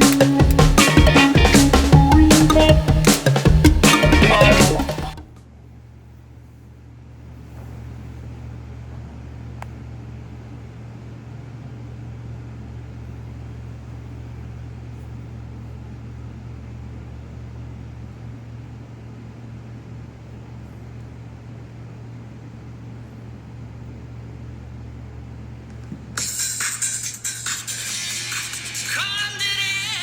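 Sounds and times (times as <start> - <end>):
steady low hum: 0.0 - 27.8
faint click: 9.6 - 9.8.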